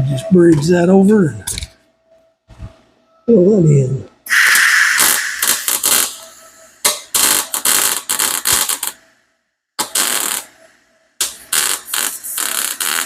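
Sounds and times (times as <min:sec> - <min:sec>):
welding arc crackling and buzzing: 0:04.3 - 0:06.2, 0:07.1 - 0:09.0, 0:09.8 - 0:10.5, 0:11.2 - 0:13.0.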